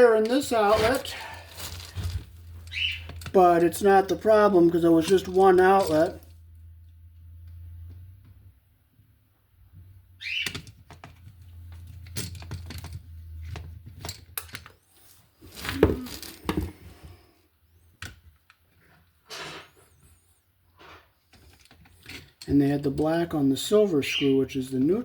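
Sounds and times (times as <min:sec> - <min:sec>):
hands handling wall outlet wires: 0:00.0 - 0:06.4, 0:10.3 - 0:17.2, 0:21.3 - 0:23.2.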